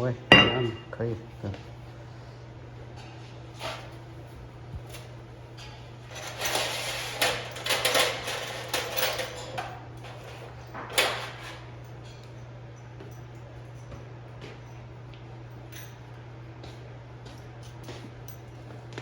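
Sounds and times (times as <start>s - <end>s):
steady low hum: 0.0s - 6.5s.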